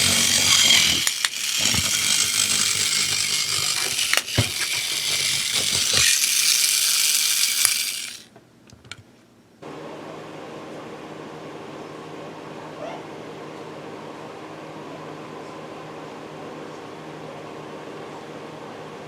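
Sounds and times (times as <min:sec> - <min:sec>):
toy train motor whirring: 0:00.0 - 0:08.3.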